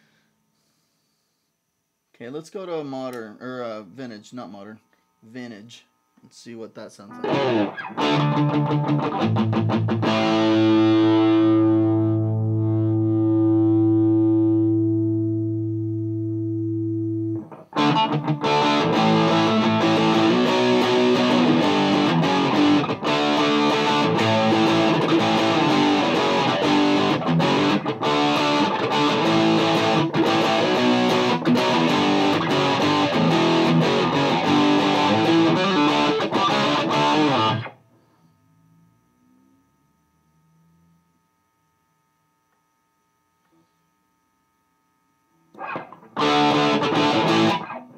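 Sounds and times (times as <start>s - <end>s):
distorted electric guitar riffing: 7.0s - 38.2s, 45.5s - 47.9s.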